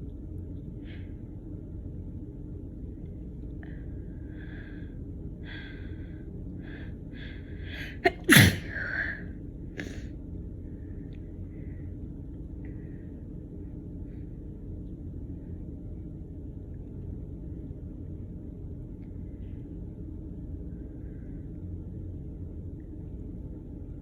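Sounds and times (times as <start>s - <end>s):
woman sneezing: 7.8s - 9.2s.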